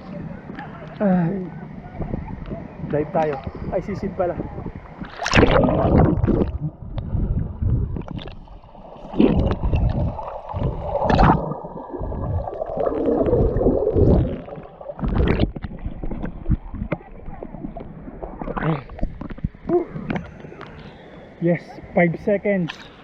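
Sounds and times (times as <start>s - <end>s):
underwater gurgling and bubbling: 4.4s - 20.5s
splashing surges: 7.9s - 19.2s.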